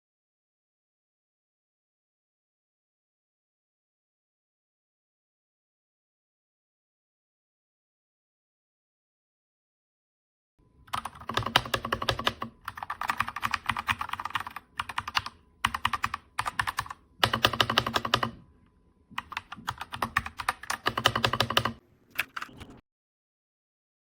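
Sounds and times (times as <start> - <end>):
mechanical keyboard typing: 10.9 - 18.4, 19.1 - 22.8.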